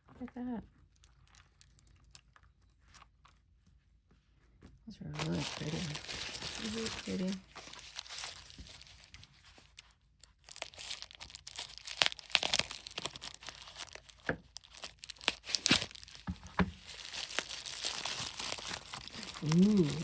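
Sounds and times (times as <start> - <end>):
packaging crinkling and tearing: 5.2 - 20.0.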